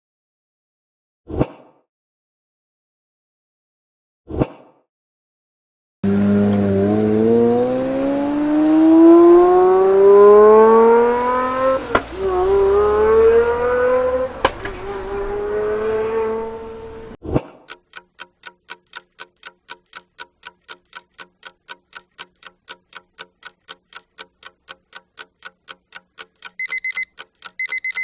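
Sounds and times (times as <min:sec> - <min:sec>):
car engine accelerating: 0:06.0 - 0:17.2
gear shift crack: 0:13.5 - 0:17.1.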